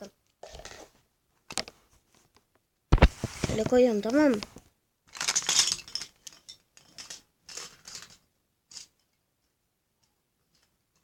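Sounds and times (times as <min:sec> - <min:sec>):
plastic toy pieces clicking: 0:05.1 - 0:09.0.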